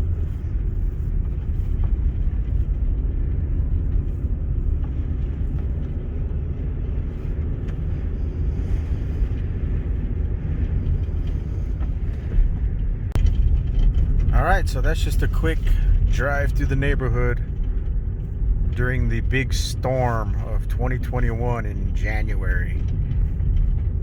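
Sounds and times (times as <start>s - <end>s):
car driving on snow: 0.0s - 24.0s.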